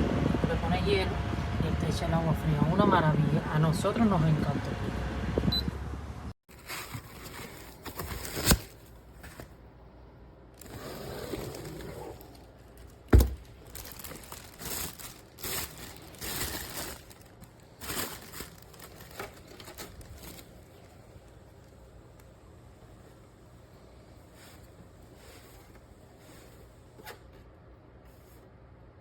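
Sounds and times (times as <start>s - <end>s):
crinkling and rustling handling: 6.5s - 9.7s, 10.5s - 27.5s.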